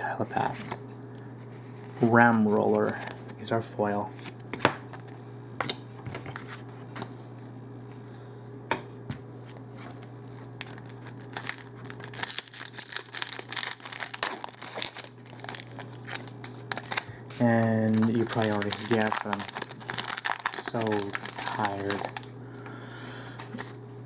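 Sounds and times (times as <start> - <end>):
steady low hum: 0.0 - 24.0
foil wrapper tearing and crinkling: 10.6 - 22.3.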